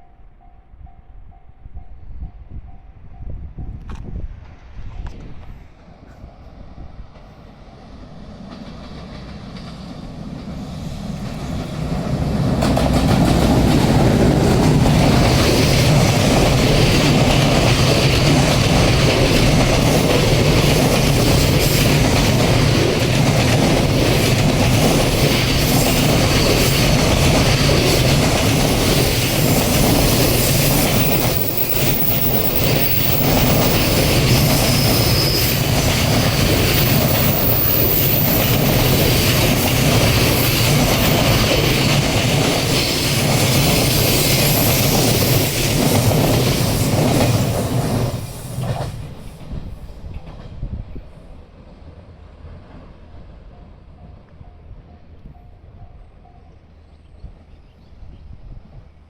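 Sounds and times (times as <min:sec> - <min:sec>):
train rumbling past: 0:00.0 - 0:59.0
train wheels clacking: 0:07.1 - 0:51.0.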